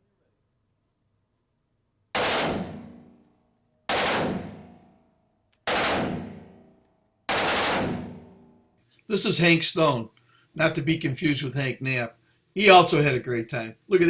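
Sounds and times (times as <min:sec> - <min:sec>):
machine-gun fire bursts: 0:02.1 - 0:03.1, 0:03.9 - 0:04.8, 0:05.6 - 0:06.6, 0:07.3 - 0:08.4.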